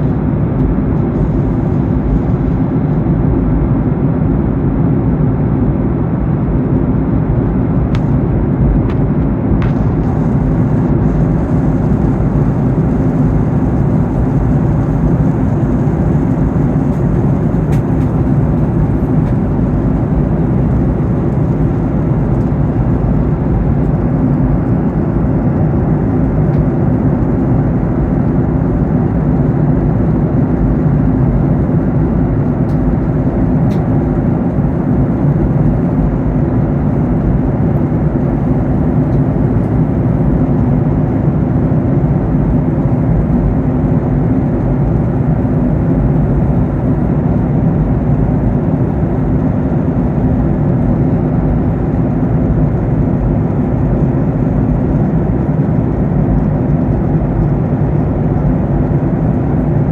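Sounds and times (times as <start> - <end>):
airplane cabin airflow and engine drone: 0.0 - 59.9.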